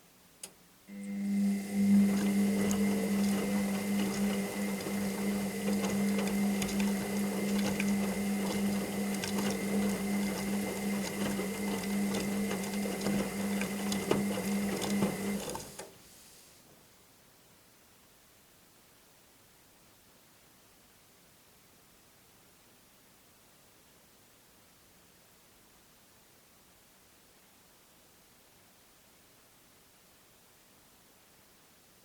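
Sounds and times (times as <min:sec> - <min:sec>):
washing machine drum turning: 0:00.9 - 0:15.8.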